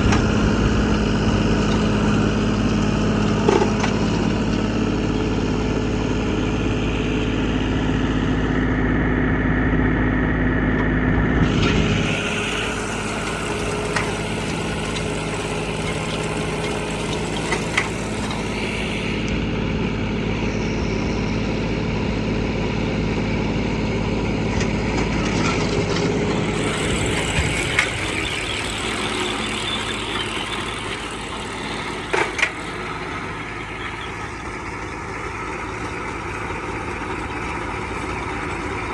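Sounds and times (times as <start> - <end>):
tractor engine running: 0.0 - 38.9
baling machinery: 10.7 - 38.9.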